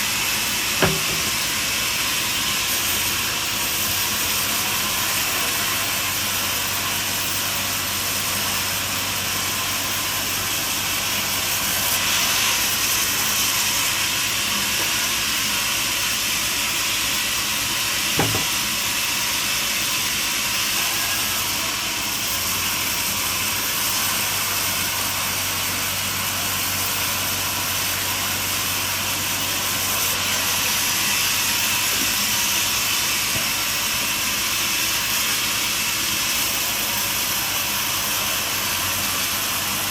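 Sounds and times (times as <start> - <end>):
band saw cutting log hiss: 0.0 - 39.9
sharp knock: 0.8 - 1.4, 18.2 - 18.6.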